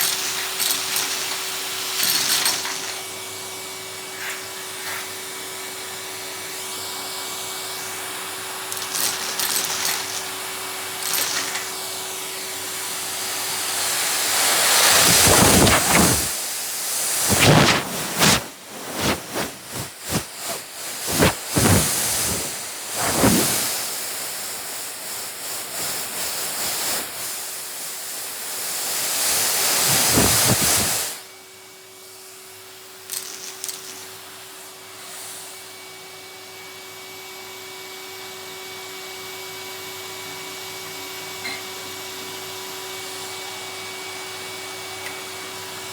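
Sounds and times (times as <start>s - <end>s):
seeds rattling up vacuum nozzle: 0.0s - 3.2s, 8.6s - 12.1s, 14.4s - 24.0s, 29.3s - 31.1s, 33.1s - 34.2s
vacuum cleaner humming: 0.0s - 27.3s, 28.4s - 31.2s.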